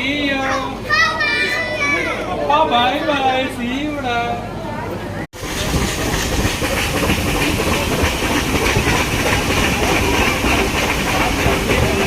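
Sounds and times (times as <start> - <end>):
train hissing and rattling: 5.4 - 12.0.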